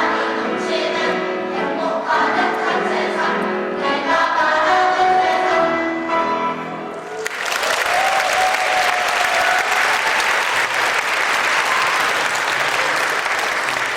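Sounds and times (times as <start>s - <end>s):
audience applauding: 7.0s - 13.9s.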